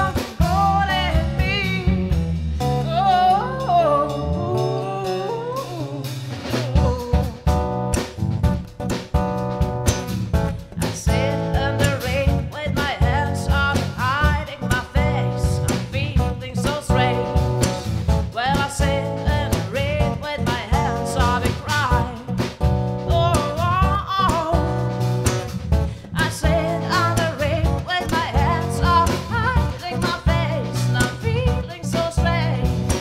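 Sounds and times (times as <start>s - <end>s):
bending melody line: 0.1s - 22.2s.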